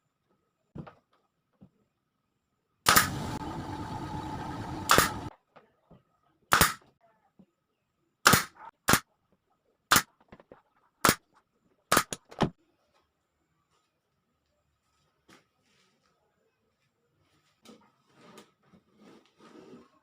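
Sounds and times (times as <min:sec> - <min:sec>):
loud click: 0:02.9 - 0:03.2, 0:04.9 - 0:05.3.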